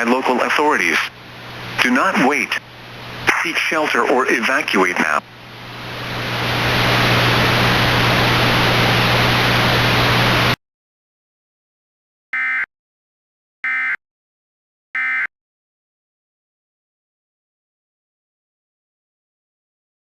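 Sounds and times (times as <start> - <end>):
radio static hiss: 0.0 - 5.2.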